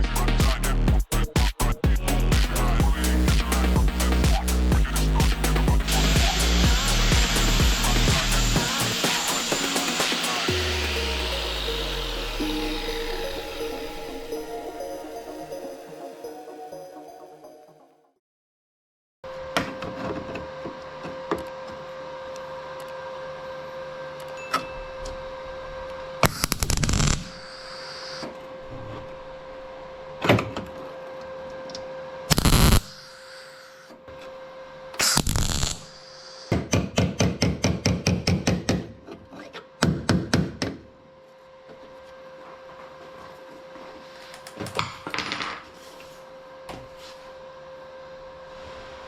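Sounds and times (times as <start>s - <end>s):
steady hum: 0.0s - 17.5s
pulsed tack welds: 1.6s - 13.9s, 26.2s - 28.2s, 32.3s - 33.1s, 35.0s - 36.5s
welding arc crackle: 4.4s - 10.6s, 26.2s - 28.0s, 32.3s - 33.0s, 35.0s - 35.9s.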